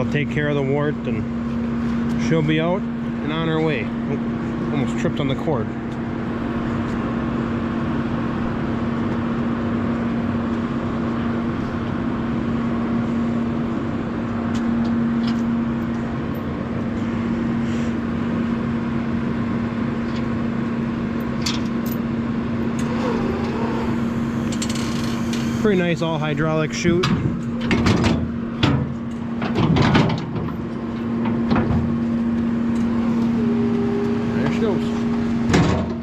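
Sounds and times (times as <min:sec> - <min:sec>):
hydraulic pump motor humming: 0:19.9 - 0:36.0.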